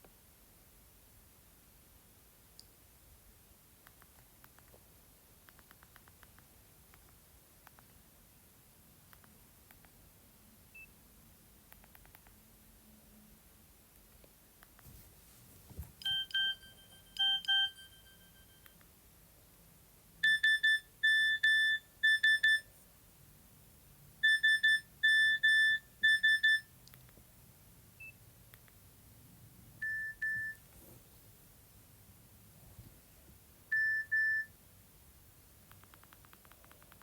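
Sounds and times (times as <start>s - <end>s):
phone beeping alert tones: 16.0s - 18.7s, 29.8s - 30.6s.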